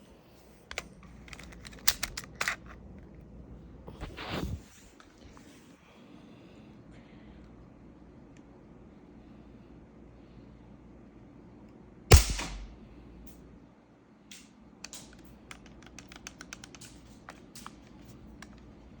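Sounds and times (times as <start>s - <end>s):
gun handling clicks and rattles: 0.7s - 3.1s, 14.3s - 19.0s
airsoft pistol shot: 12.1s - 12.8s.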